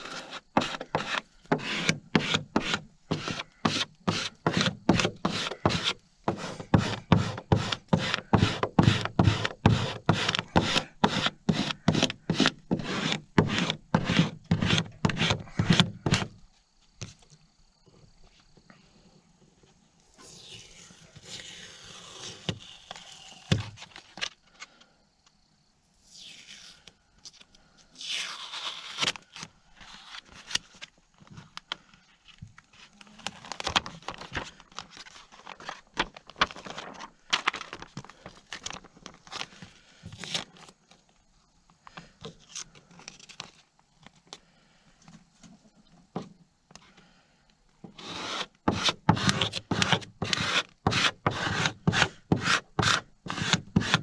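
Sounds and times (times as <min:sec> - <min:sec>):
tearing sounds: 0:26.0 - 0:26.9, 0:28.0 - 0:30.6.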